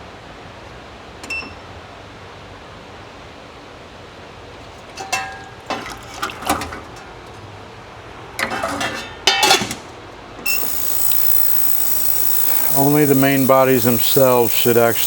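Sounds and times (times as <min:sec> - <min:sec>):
short beep: 0:10.5 - 0:15.0.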